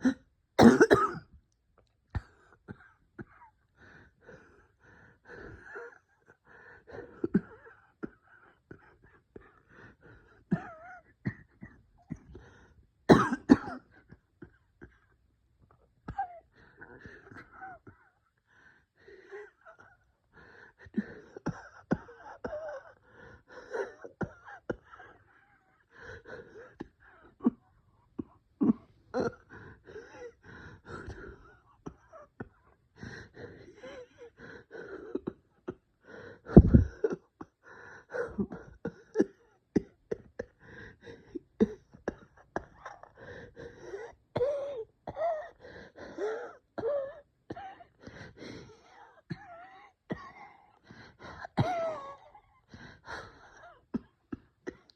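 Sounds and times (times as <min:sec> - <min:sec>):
person wheezing and gasping: 0:19.2 - 0:54.9.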